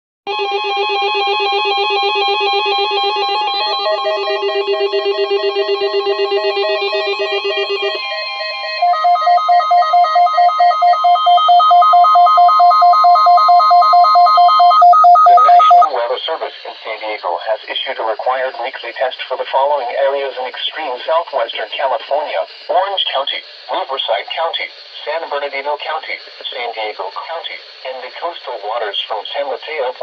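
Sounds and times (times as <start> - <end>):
electronic trilling tune: 0.3 - 15.9.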